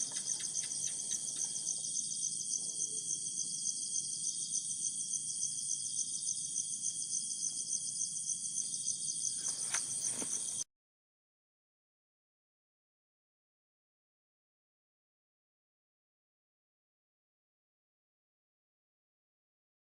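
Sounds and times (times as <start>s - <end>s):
high-pitched insect chorus: 0.0s - 10.6s.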